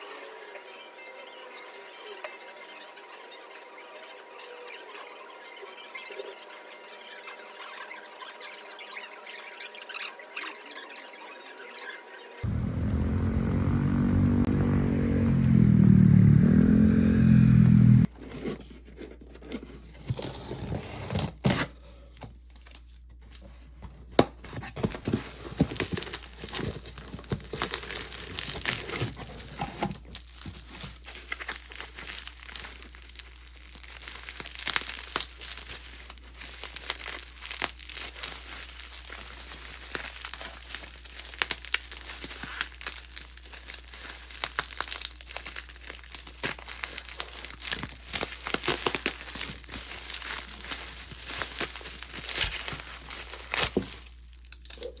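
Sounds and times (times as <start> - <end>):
loud pitch-bending tone: 12.4 - 18.1
crinkling and rustling: 22.1 - 55.0.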